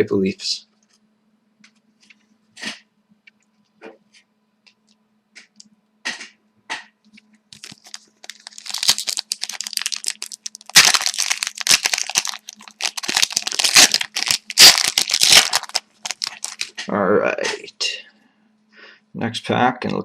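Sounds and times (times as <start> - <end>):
wrapper tearing and crinkling: 7.5 - 16.8.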